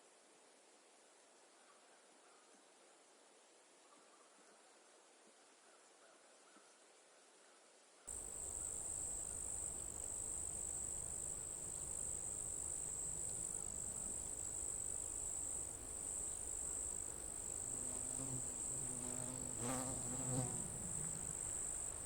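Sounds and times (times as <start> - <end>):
insects shrilling: 8.1 - 22.0.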